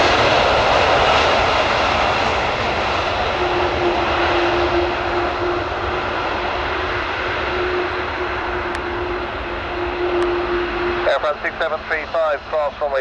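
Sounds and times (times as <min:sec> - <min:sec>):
jet engines rushing: 0:00.0 - 0:13.0
steady hum: 0:02.5 - 0:12.8.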